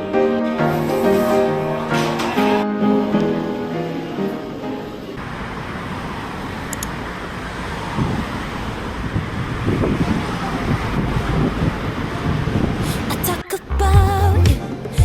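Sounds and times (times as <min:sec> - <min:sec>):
steady traffic: 0:03.1 - 0:14.1
wind buffeting microphone: 0:07.9 - 0:13.0.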